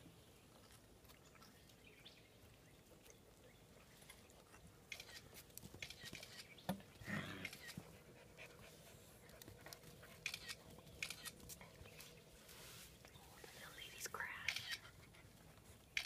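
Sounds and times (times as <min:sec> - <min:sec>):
dog panting: 0:07.5 - 0:10.8, 0:14.8 - 0:15.9.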